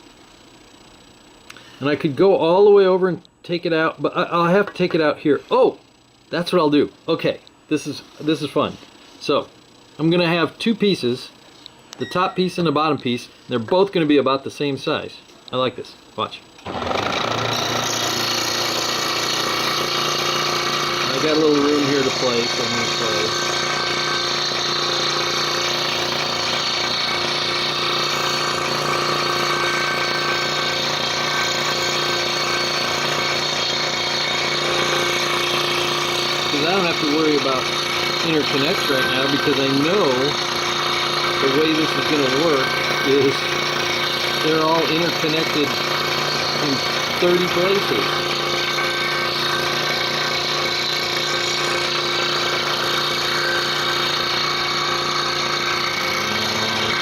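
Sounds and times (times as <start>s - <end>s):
scroll saw cutting wood: 16.6s - 57.0s.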